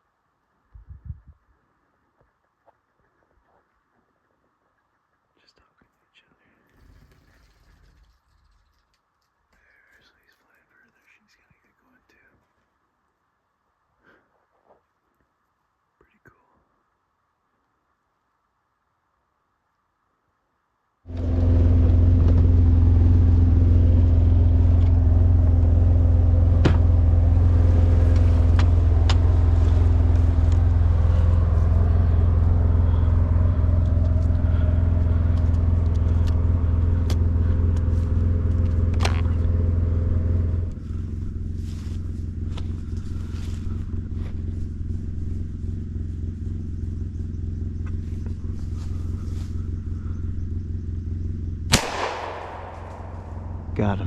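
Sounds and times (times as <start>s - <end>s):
vehicle engine humming: 6.7s - 9.1s, 21.1s - 54.0s.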